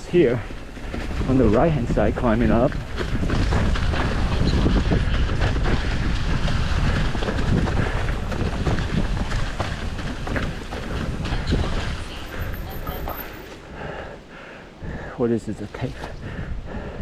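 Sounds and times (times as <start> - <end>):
tyre rumble on dirt: 0.0 - 13.1
wind buffeting microphone: 0.0 - 17.0
bike knocks and rattles: 0.4 - 12.1.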